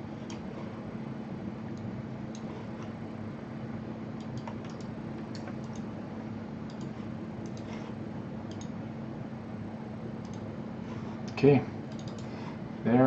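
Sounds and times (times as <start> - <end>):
steady low hum: 0.0 - 13.0
computer keyboard clicking: 4.2 - 5.9, 6.7 - 7.7, 8.5 - 8.7, 11.3 - 12.3.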